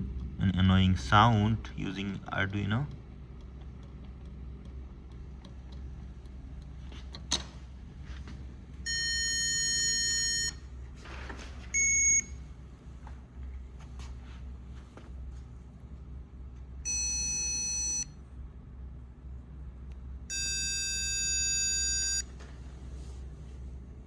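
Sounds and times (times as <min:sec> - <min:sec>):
speaker beeping: 0:08.9 - 0:10.6, 0:11.7 - 0:12.4, 0:16.9 - 0:18.1, 0:20.3 - 0:22.3.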